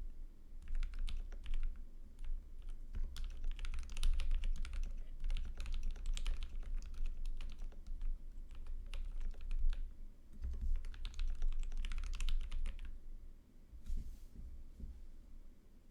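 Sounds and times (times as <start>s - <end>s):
fast typing on mechanical keyboard: 0.6s - 12.9s.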